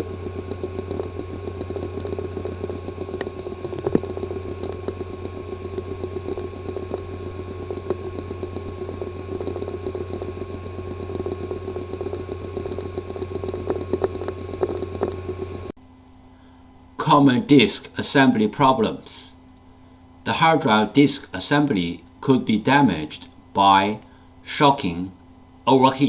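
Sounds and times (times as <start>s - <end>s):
hard drive ticking and rattling: 0.0s - 15.8s
hard drive buzzing hum: 0.0s - 26.0s.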